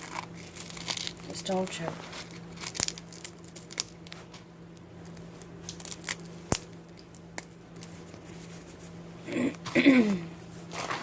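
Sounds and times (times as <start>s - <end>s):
ice cream cone crunching: 0.0s - 4.4s, 5.0s - 8.5s
steady low hum: 0.0s - 11.0s.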